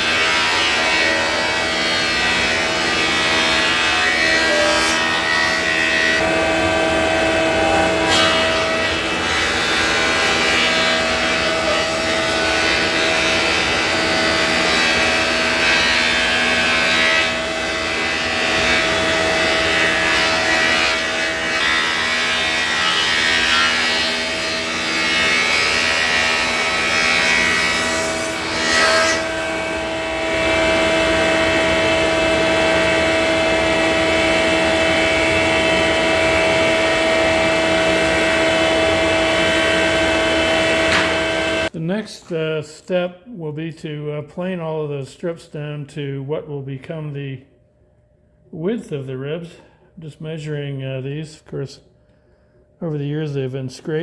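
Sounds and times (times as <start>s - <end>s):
power saw ripping wood: 35.4s - 41.7s.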